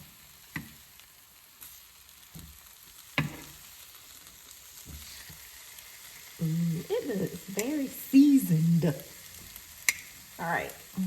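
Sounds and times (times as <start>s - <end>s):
chicken sizzling in a frying pan: 0.0s - 11.0s
utensil knocking on pan: 3.2s - 3.5s.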